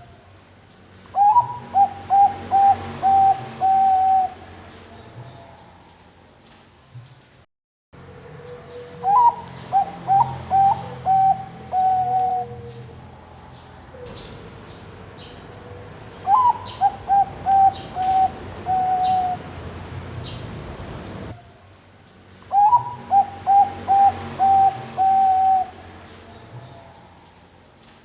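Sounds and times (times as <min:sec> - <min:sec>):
dove cooing: 0:01.2 - 0:04.6, 0:08.1 - 0:21.3, 0:22.5 - 0:27.5.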